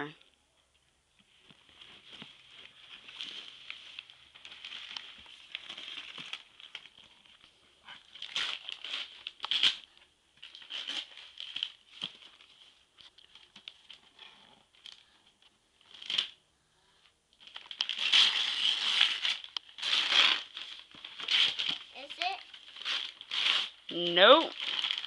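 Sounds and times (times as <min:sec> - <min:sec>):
wrapping paper tearing and crumpling: 0:01.7 - 0:15.2, 0:15.8 - 0:16.4, 0:17.4 - 0:25.0.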